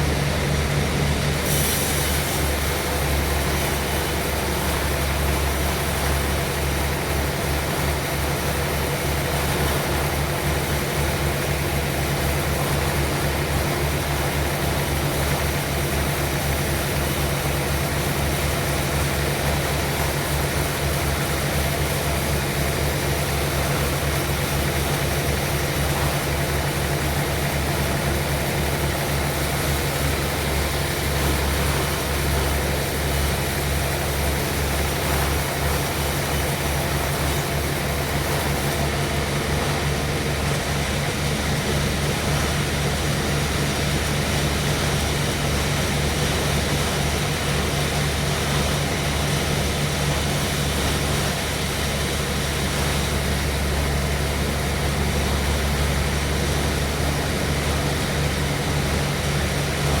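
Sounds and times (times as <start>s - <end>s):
sawmill machinery drone: 0.0s - 60.0s.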